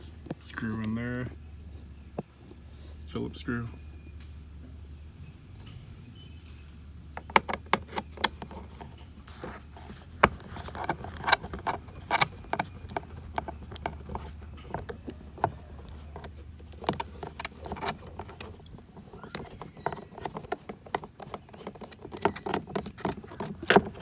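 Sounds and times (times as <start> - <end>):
screwdriver clicking on plastic: 7.2 - 24.0.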